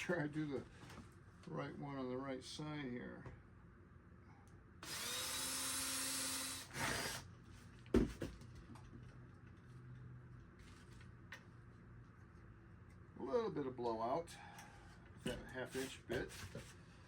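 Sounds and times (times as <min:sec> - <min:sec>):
electric drill boring wood: 0:04.8 - 0:07.2.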